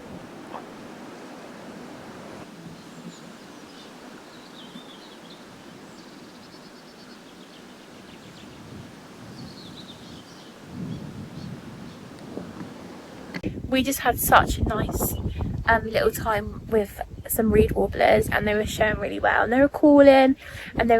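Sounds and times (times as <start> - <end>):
steady background hiss: 0.0 - 20.9
warbler singing: 2.6 - 12.4, 14.6 - 16.3.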